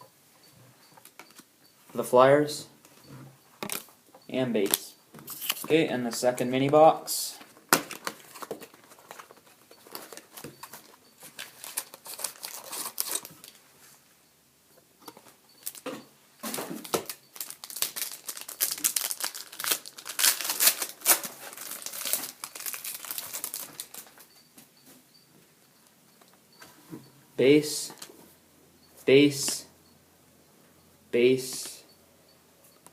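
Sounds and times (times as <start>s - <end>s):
card pack wrappers crinkling: 7.7s - 13.6s, 15.6s - 15.8s, 16.7s - 24.3s.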